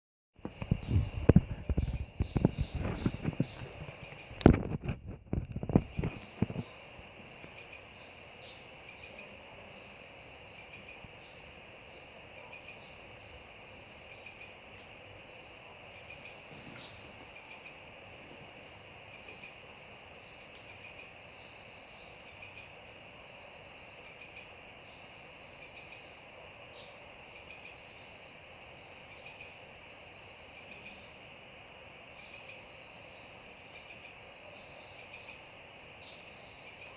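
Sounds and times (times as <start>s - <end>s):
knocks and thumps: 0.4s - 6.7s
crickets and insects chirping: 0.4s - 36.9s.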